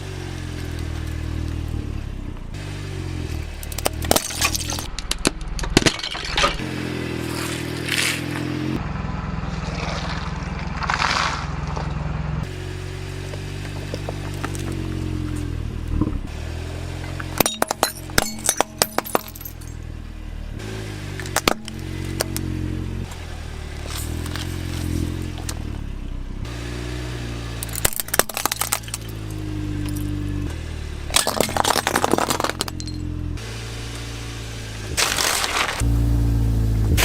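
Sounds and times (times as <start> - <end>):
low hum: 21.2 - 37.0
plastic toys clattering together: 31.1 - 33.0.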